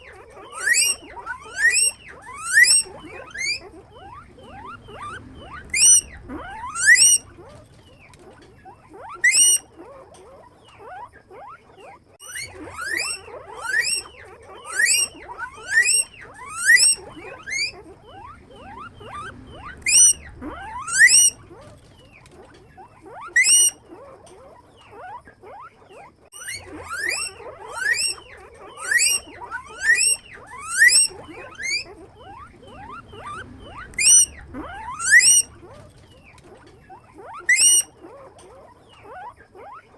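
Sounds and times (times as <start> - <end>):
guinea pig squeaking: 0.0 - 39.9.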